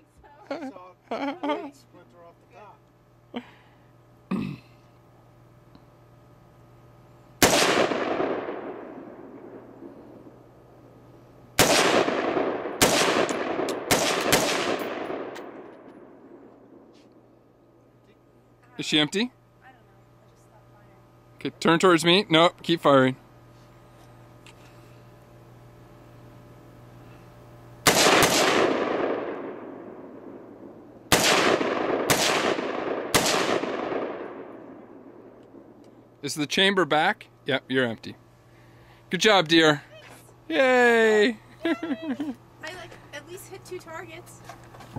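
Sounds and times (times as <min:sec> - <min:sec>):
rifle shots echoing: 0:07.4 - 0:09.8, 0:11.6 - 0:16.8, 0:27.8 - 0:35.7.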